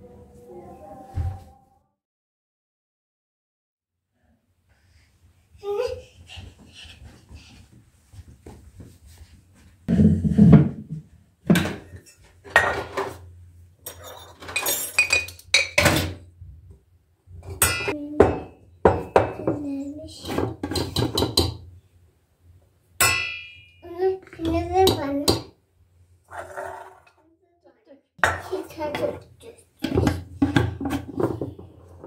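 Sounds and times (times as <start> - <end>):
dishes and cutlery clinking: 11.6 - 13.2, 13.8 - 16.2, 17.5 - 21.6, 28.2 - 29.2.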